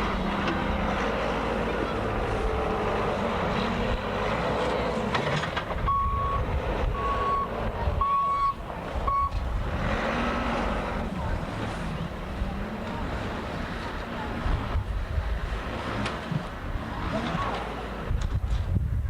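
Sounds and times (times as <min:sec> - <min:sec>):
reversing alarm beeping: 0:05.9 - 0:09.4.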